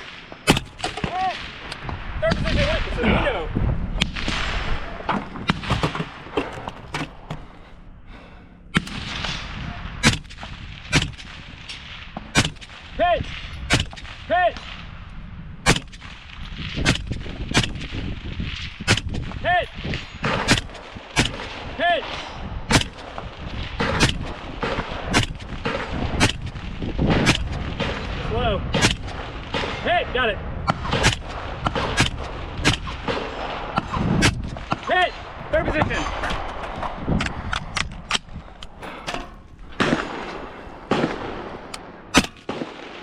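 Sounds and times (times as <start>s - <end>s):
gunshots: 0.0s - 3.2s, 8.8s - 14.9s, 15.6s - 43.0s
faint gunshots: 39.7s - 43.0s.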